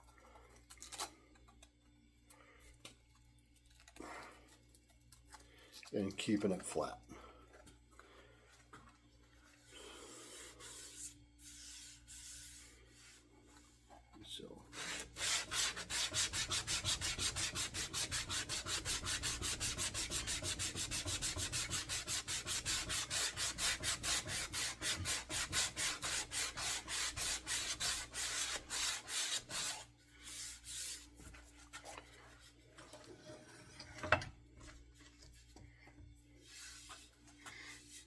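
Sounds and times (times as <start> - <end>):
sandpaper rubbing on wood: 14.8 - 31.2.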